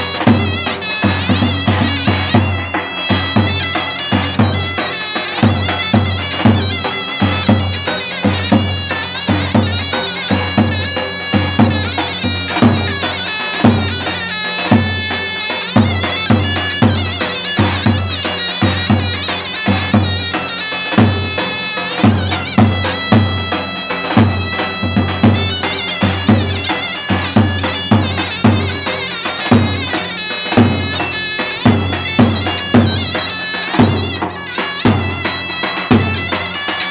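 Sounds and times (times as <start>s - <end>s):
davul drum beat: 0.0s - 36.9s
zurna melody: 0.0s - 36.9s.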